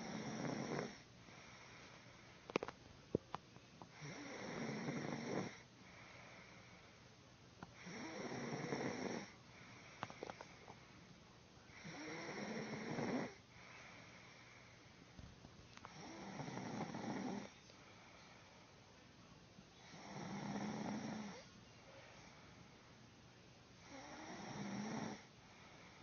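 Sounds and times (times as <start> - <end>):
person snoring: 0.0 - 1.0, 4.0 - 5.6, 7.8 - 9.3, 11.7 - 13.4, 15.9 - 17.6, 19.8 - 21.5, 23.8 - 25.3
soft breathing: 0.9 - 2.7, 5.5 - 8.5, 9.2 - 12.6, 13.3 - 23.1, 23.8 - 26.0.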